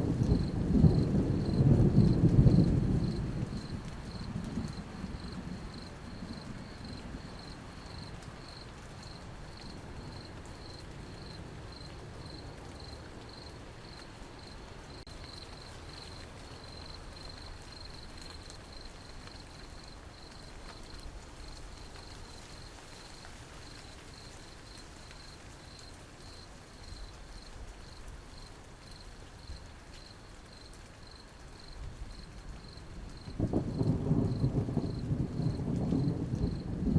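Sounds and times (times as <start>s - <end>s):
thunder rumbling: 0.0s - 15.4s, 31.8s - 36.9s
rain hissing: 0.0s - 36.9s
cricket chirping: 0.2s - 36.8s.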